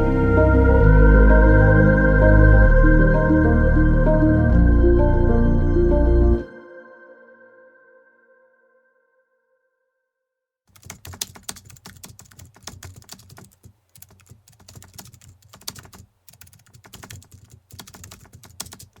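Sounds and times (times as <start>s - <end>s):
typing on a keyboard: 10.7s - 19.0s.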